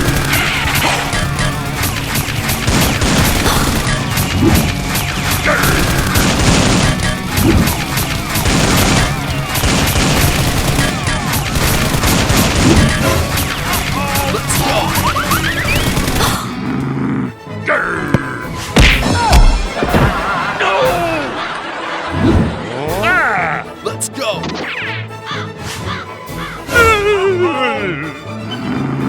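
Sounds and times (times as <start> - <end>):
rapid gunshots: 0.0 - 16.6
action background music: 0.0 - 29.0.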